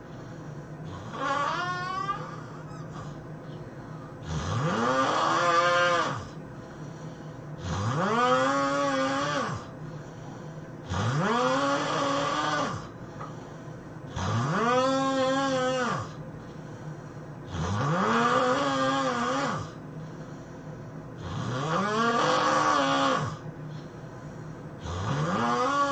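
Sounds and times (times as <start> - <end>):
person snoring heavily: 0.8 - 3.2, 4.2 - 6.4, 7.6 - 9.8, 10.8 - 13.0, 14.1 - 16.2, 17.5 - 19.8, 21.2 - 23.5, 24.8 - 25.9.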